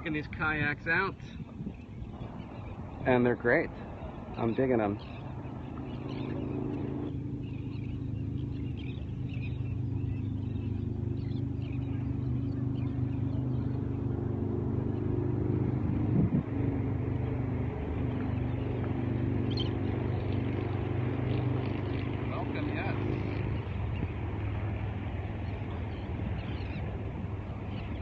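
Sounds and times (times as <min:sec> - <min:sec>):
motor engine running: 0:01.3 - 0:28.0.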